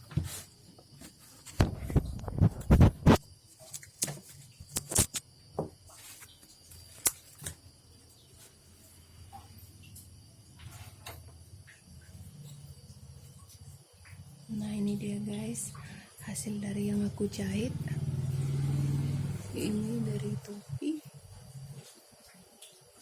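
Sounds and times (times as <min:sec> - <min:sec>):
objects clicking and knocking: 0:01.4 - 0:07.6.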